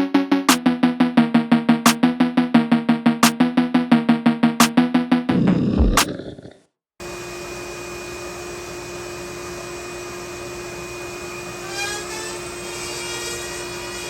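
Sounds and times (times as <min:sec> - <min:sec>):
mechanical whir with hum: 0:07.0 - 0:14.0.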